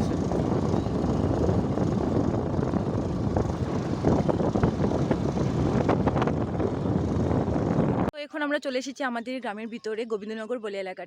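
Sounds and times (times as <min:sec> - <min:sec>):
car engine and road rumble: 0:00.0 - 0:08.1.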